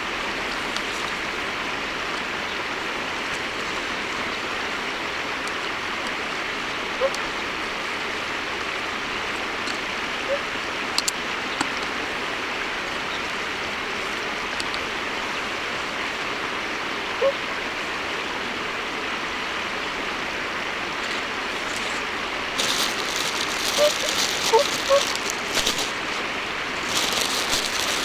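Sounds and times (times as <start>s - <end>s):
flowing water rushing: 0.0s - 28.0s
faint bird calls: 22.8s - 25.8s.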